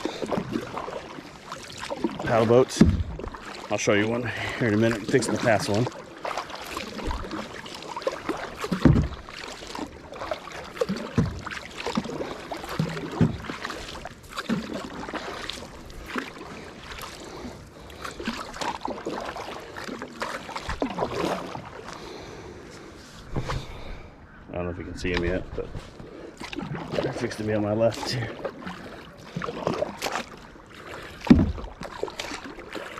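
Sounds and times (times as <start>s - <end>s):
paddle splashing in water: 0.0s - 24.1s, 25.0s - 32.9s
thump: 2.8s - 3.2s, 8.8s - 9.2s, 31.3s - 31.7s.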